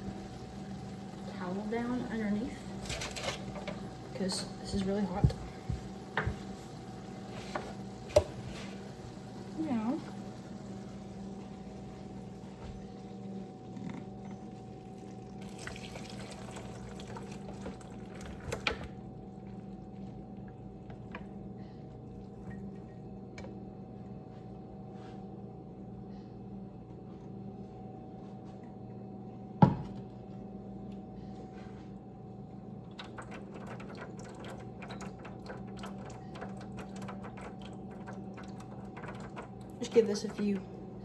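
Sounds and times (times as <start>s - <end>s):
grease trickling and dripping: 14.6s - 23.0s, 32.9s - 40.6s.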